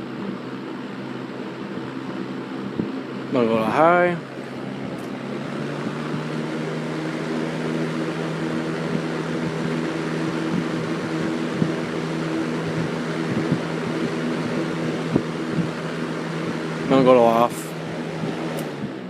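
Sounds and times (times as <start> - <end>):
box fan air rush: 0.0 - 19.0
fan motor hum: 0.0 - 19.0.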